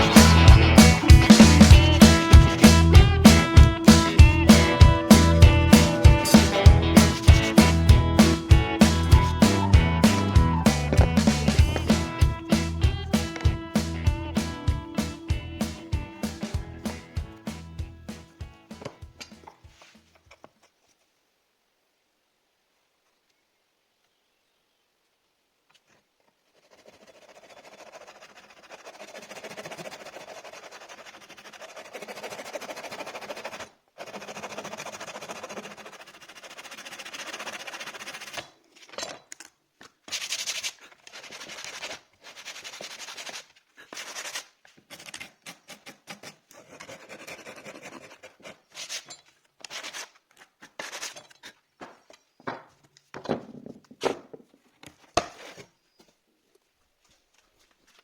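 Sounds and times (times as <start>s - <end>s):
hand rubbing wooden surface: 0.1s - 14.0s.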